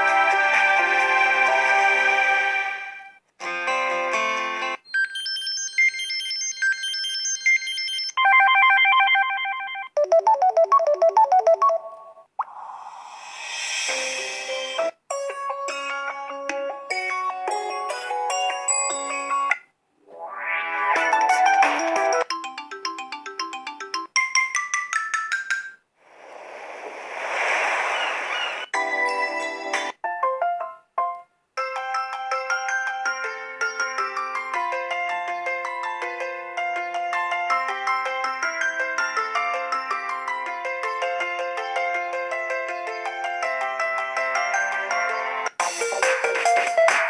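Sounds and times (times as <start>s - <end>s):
electronic ringtone melodies: 4.8s - 12.3s, 20.6s - 25.7s
phone ringtone chiming melodies: 4.8s - 12.3s, 15.7s - 19.5s, 20.9s - 25.8s, 31.6s - 46.0s
hissing tone: 12.4s - 14.9s, 26.1s - 28.9s.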